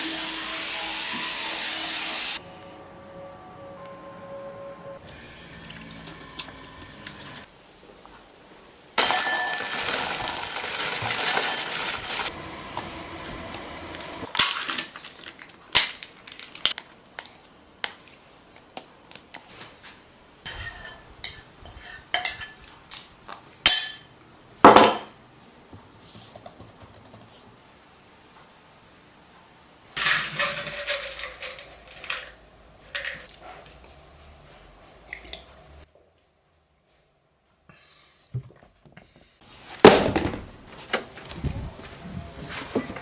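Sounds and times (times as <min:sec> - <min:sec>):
dishes and cutlery clinking: 0:20.5 - 0:22.8, 0:23.7 - 0:24.1, 0:24.7 - 0:25.2.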